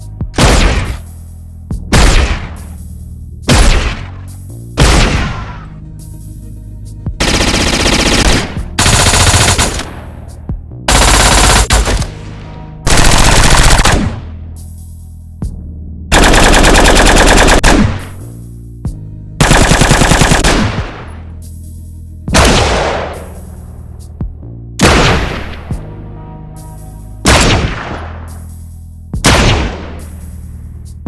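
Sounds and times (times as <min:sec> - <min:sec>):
steady low drone: 0:00.0 - 0:31.0
sci-fi energy weapon automatic fire: 0:00.4 - 0:01.0, 0:03.5 - 0:04.0, 0:07.2 - 0:10.0, 0:10.9 - 0:12.1, 0:12.9 - 0:14.2, 0:16.1 - 0:18.2, 0:19.4 - 0:21.0.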